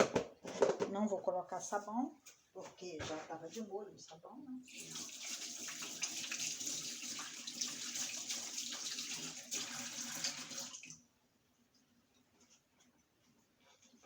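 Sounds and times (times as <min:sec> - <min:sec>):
water filling washing machine: 0:04.6 - 0:11.1.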